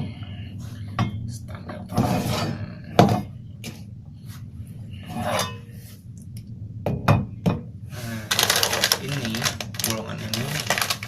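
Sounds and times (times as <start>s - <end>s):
metal scraping rub: 2.0s - 2.7s.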